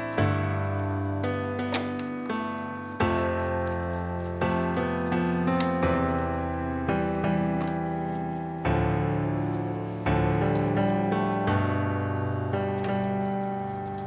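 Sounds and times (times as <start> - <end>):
slow piano chords: 0.0 - 14.0.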